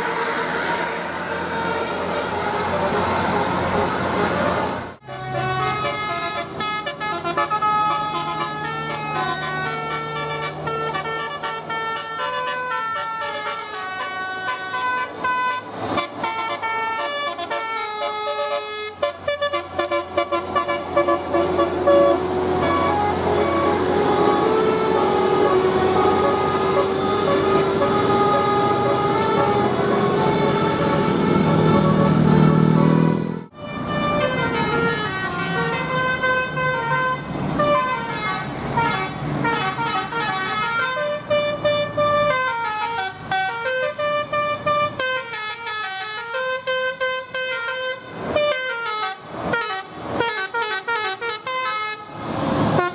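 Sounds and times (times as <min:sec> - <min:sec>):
bus musical air horn tune: 0:00.0 - 0:52.9
long rising tone: 0:21.4 - 0:35.8.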